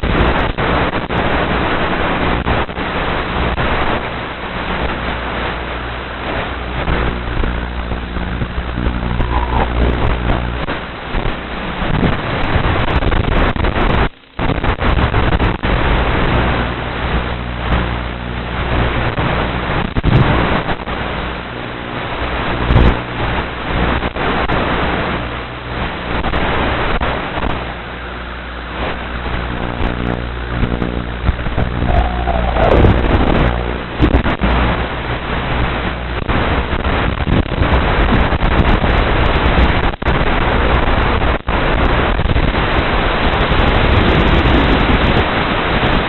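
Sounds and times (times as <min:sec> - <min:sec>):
wind rushing over microphone: 0:00.0 - 0:46.0
electric motors and propellers humming: 0:05.7 - 0:11.7, 0:27.6 - 0:35.4
jet whine sweeping down: 0:08.6 - 0:10.6, 0:31.3 - 0:34.8.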